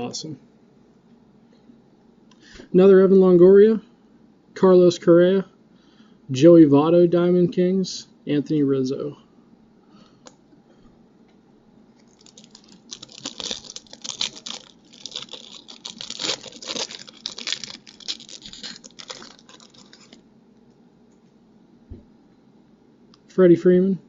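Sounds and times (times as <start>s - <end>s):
wrapper tearing and crinkling: 12.0s - 20.2s.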